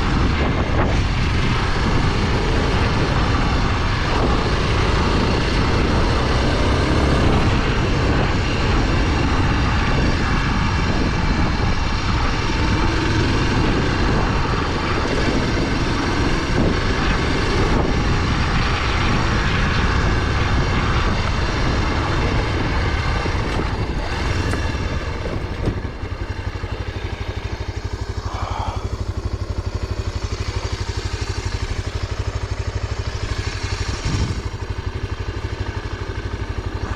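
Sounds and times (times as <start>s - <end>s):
motorcycle engine running: 0.0s - 36.9s
rushing noise: 10.7s - 36.9s.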